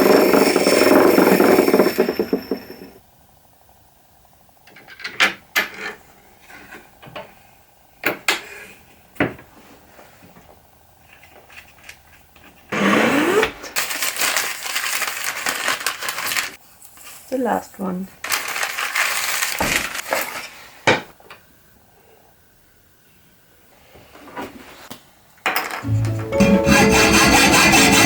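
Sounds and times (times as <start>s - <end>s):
sanding noise: 25.9s - 28.0s.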